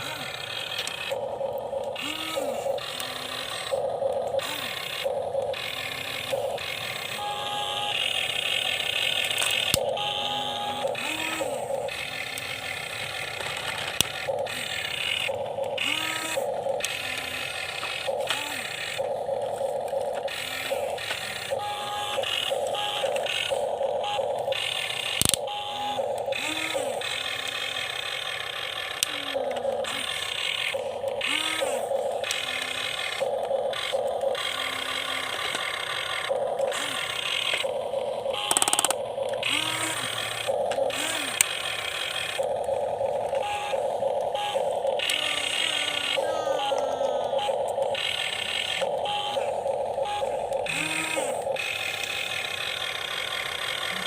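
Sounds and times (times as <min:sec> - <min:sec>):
small electric motors whining: 0:00.0 - 0:54.0
sharp clicks: 0:07.9 - 0:10.0, 0:10.9 - 0:15.9, 0:16.7 - 0:25.5, 0:28.8 - 0:49.4.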